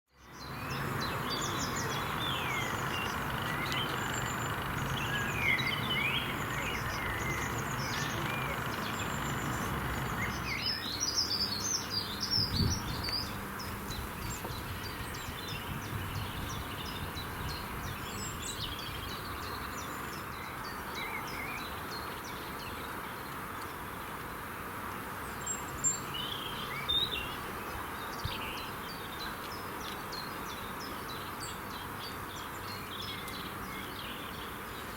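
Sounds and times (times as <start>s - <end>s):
wild birds singing and calling: 0.2s - 24.0s, 25.3s - 34.9s
steady background hiss: 0.4s - 14.2s.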